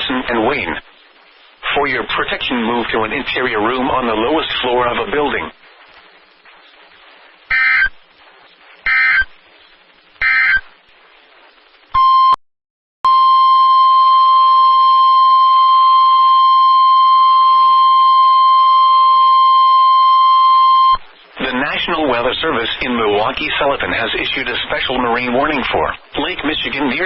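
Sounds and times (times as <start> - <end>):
data tone bursts: 7.5 - 8.0, 8.8 - 9.3, 10.2 - 10.7
steady warning alarm tone: 7.5 - 8.0, 8.9 - 9.3, 10.2 - 10.6.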